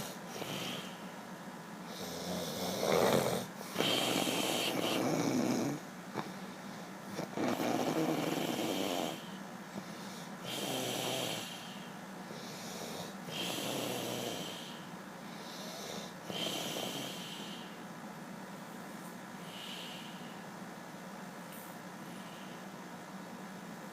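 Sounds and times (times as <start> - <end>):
slow snoring: 0.0 - 1.0, 1.9 - 6.4, 7.1 - 9.4, 10.4 - 11.8, 12.4 - 17.8.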